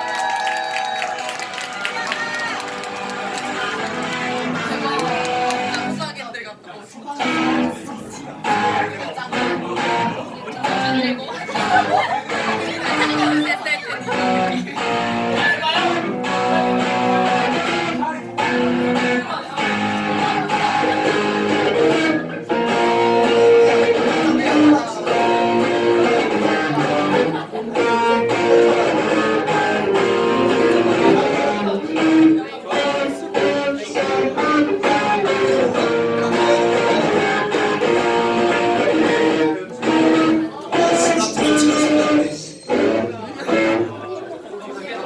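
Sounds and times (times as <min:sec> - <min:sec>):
strummed guitars: 0:02.6 - 0:06.0, 0:07.2 - 0:44.1
live band music: 0:14.1 - 0:43.9.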